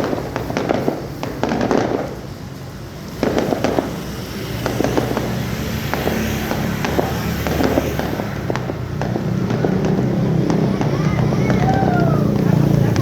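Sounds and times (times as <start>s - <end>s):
fireworks popping and crackling: 0.0s - 13.0s.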